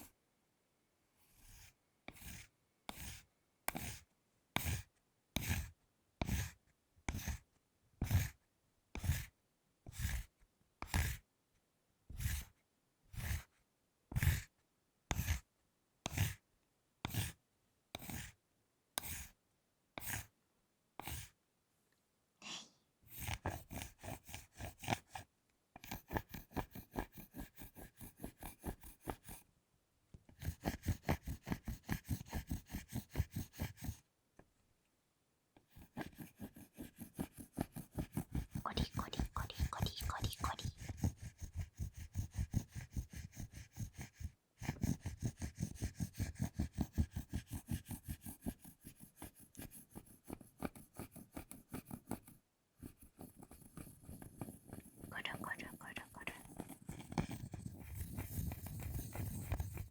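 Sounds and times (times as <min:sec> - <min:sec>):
fork scraping chocolate bar: 0:56.3 - 0:59.9.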